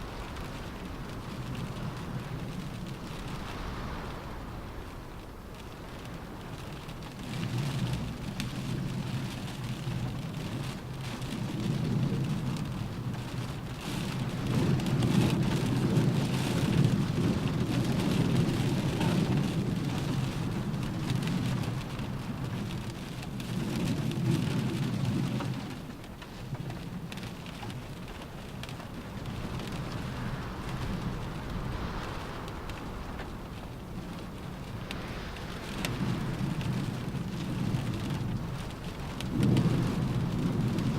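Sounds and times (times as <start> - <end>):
rain pattering on car roof: 0.0 - 40.9
deep rumble: 27.5 - 40.9.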